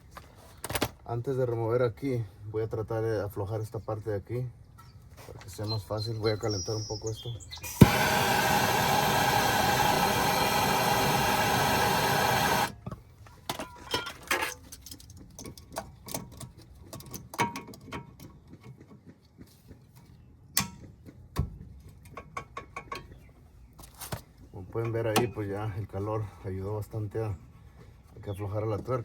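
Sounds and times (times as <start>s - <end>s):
gas torch burning: 7.6s - 12.8s.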